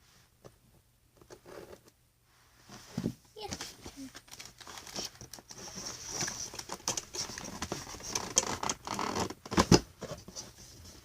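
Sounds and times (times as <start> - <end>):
hands rustling packaging: 3.4 - 9.8.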